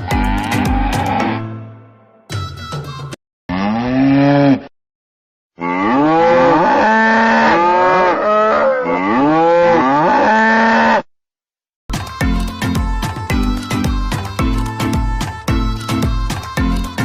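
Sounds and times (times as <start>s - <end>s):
music: 0.0s - 3.2s, 11.9s - 17.0s
cattle mooing: 3.5s - 4.7s, 5.6s - 11.0s.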